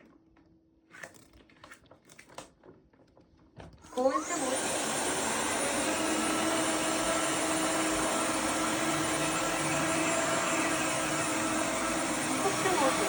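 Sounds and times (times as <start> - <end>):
floor washer running: 3.9 - 13.0.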